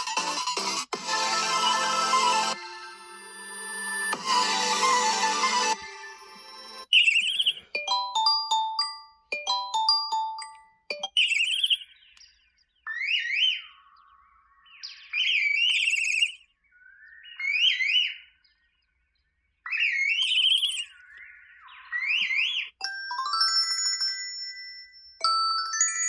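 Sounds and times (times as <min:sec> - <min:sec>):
electronic ringtone sweeps: 0:00.0 - 0:11.8, 0:15.7 - 0:16.4
chime-like ringtone notes: 0:01.2 - 0:06.9, 0:07.5 - 0:11.7, 0:22.8 - 0:26.0.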